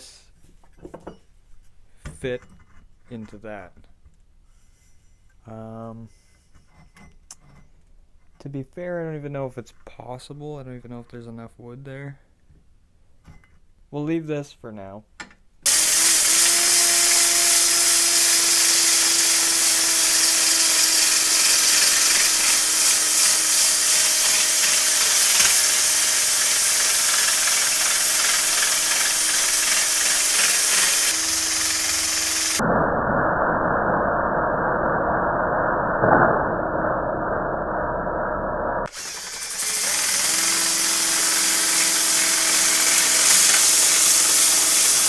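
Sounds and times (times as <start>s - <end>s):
electric power tool whining: 15.7s - 32.6s, 38.9s - 45.0s
loud hiss: 15.7s - 45.0s.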